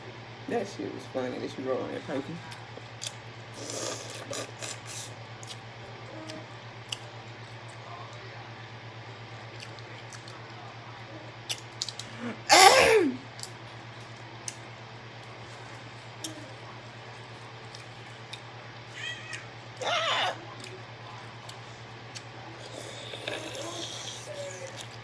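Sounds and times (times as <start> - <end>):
short loud vocal sounds: 12.4 - 13.2.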